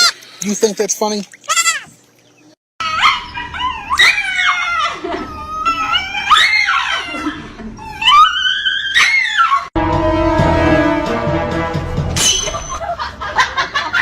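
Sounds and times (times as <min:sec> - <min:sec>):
dog crying: 0:02.8 - 0:09.7.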